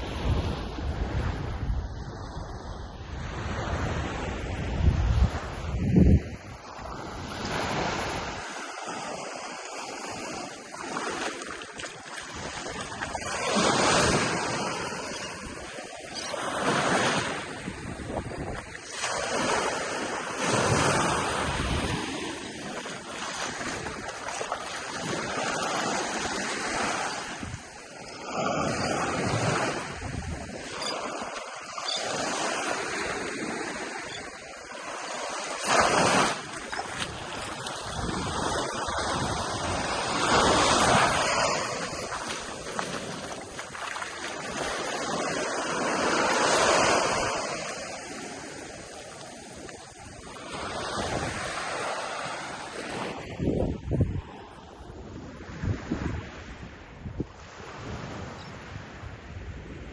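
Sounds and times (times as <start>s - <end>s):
wind buffeting microphone: 0.0s - 8.4s, 20.4s - 27.8s, 28.4s - 31.2s, 35.7s - 47.9s, 48.5s - 51.9s, 52.8s - 59.9s
surf breaking on beach: 34.8s - 54.4s.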